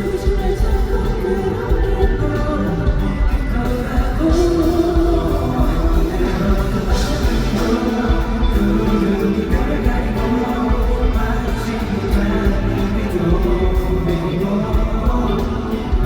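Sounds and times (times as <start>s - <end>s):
pop-rock music over sound system: 0.0s - 16.0s.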